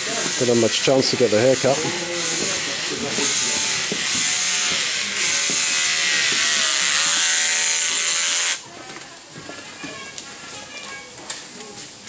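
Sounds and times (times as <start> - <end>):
electric hair clippers buzzing: 0.0 - 8.6.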